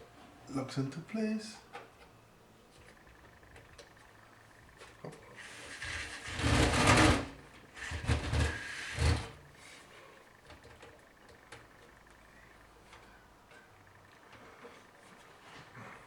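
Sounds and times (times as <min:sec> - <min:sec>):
drive scraping along metal bay: 0:05.3 - 0:09.4.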